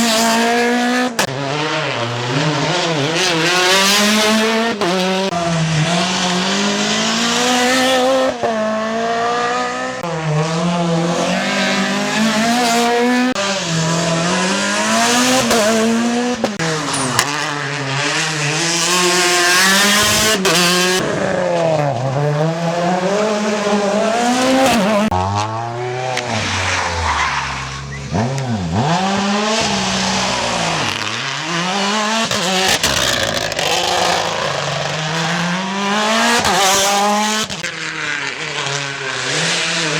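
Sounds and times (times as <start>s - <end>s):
rally car engines revving: 0.0s - 39.9s.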